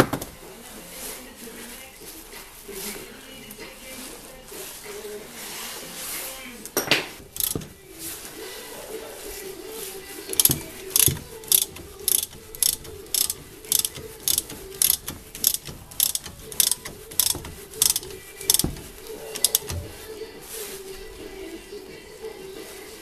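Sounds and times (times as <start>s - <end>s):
ratchet wrench clicking: 7.3s - 7.8s, 10.3s - 19.9s.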